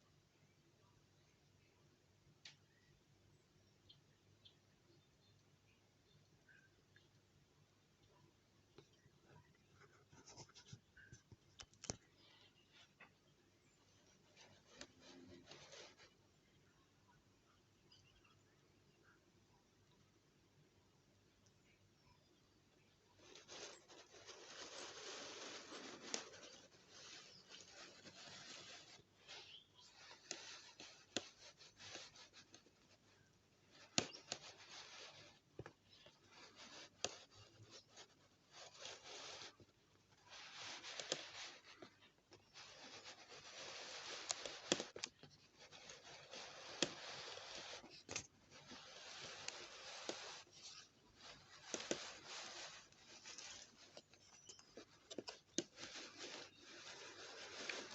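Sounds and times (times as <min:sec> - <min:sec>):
faint rubbing and scraping: 0:03.0 - 0:19.2, 0:21.5 - 0:57.9
light clicks and taps: 0:08.7 - 0:13.2.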